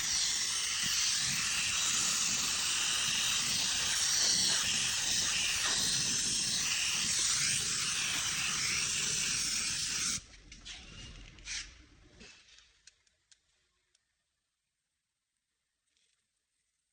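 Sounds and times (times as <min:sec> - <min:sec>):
spray gun hissing: 0:00.0 - 0:10.2.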